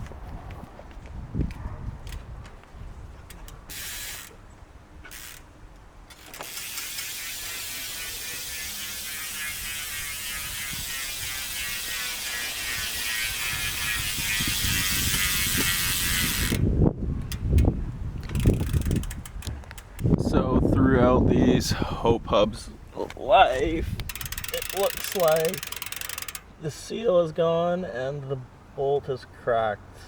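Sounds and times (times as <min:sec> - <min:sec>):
bicycle hub ratchet buzzing: 0:03.3 - 0:20.2, 0:24.0 - 0:26.6.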